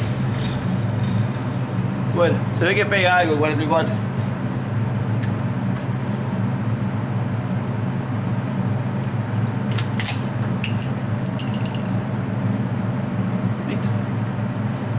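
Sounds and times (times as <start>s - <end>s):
steady low hum: 0.0s - 14.9s
metallic clicks and clinks: 10.6s - 12.2s.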